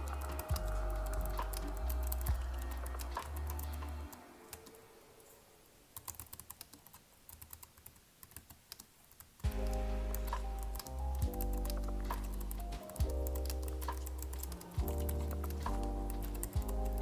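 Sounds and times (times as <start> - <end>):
lo-fi music with bass line: 0.0 - 4.1, 9.5 - 17.0.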